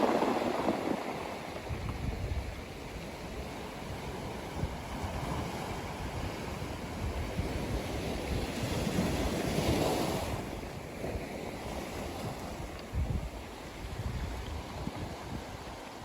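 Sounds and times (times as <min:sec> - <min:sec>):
ocean surf on a beach: 0:00.0 - 0:16.0.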